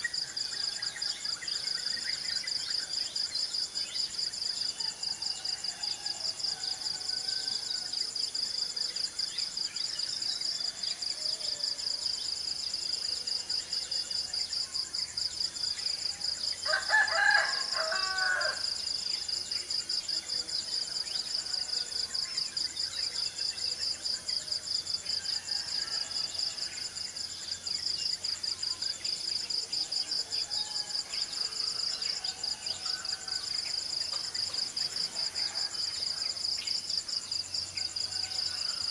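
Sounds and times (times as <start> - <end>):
rooster crowing: 16.6 - 18.8, 38.0 - 38.9.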